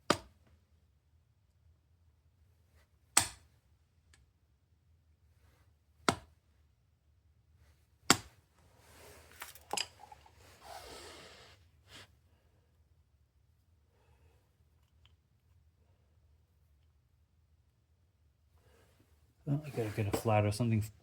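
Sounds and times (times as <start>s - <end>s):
scraping and rattling handling: 8.8s - 10.6s.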